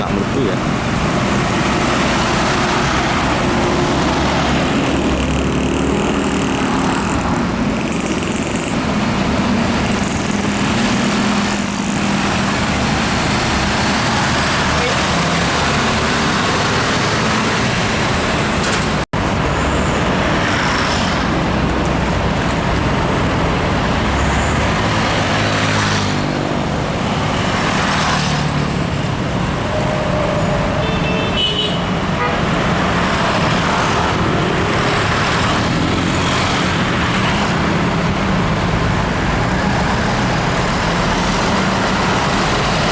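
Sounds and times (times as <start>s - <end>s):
road traffic passing: 0.0s - 42.9s
high-pitched horn tone: 29.9s - 32.4s.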